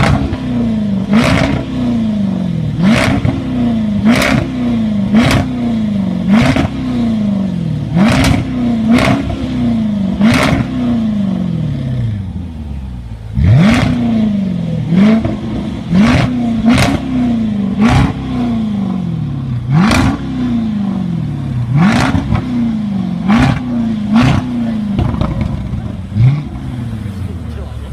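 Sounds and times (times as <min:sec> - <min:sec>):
car engine revving in blips: 0:00.0 - 0:12.3, 0:13.2 - 0:27.9
exhaust crackles and pops: 0:23.3 - 0:26.6.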